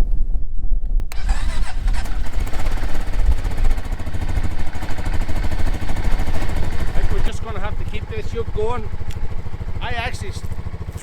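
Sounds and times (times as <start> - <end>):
quad bike engine running: 1.1 - 11.0.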